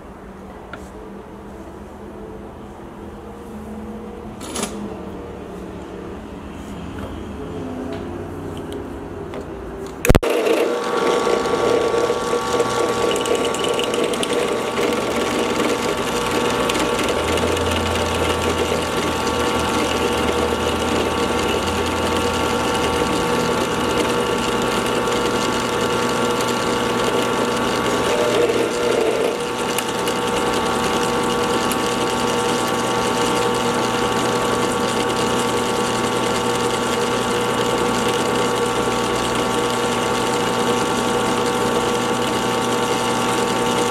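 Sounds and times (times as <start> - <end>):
drill press whirring: 10.0 - 43.9.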